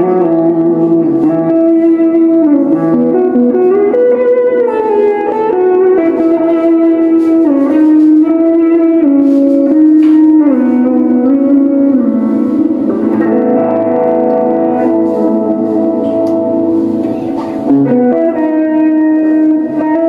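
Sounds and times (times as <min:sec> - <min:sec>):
distorted electric guitar melody: 0:00.0 - 0:20.0.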